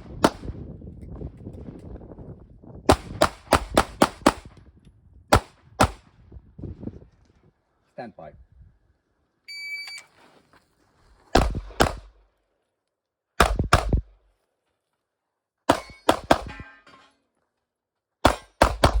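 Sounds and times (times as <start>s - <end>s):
pistol shots: 5.3s - 6.0s, 11.3s - 12.2s, 13.4s - 14.0s, 18.2s - 19.0s
steel targets ringing: 15.8s - 17.2s.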